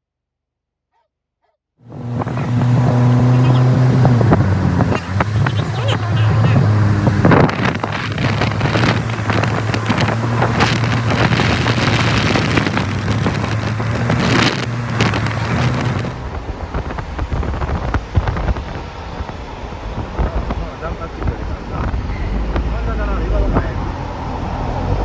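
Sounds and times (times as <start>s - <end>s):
low motor hum: 1.8s - 20.2s
wind buffeting microphone: 1.8s - 25.0s.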